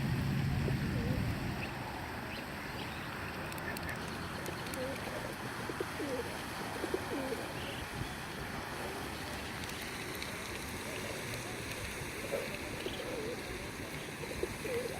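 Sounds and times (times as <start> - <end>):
running water: 0.0 - 14.9.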